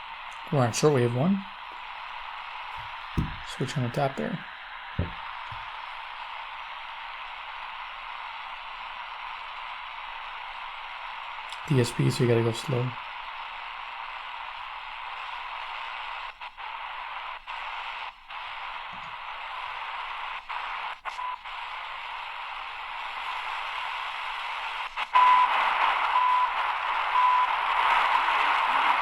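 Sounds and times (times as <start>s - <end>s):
radio static hissing: 0.0s - 29.0s.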